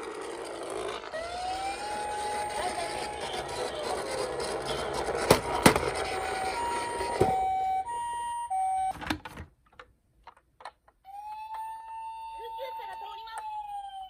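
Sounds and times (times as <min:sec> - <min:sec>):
toy siren hi-lo: 0:01.1 - 0:05.0, 0:06.0 - 0:09.0, 0:11.0 - 0:14.0.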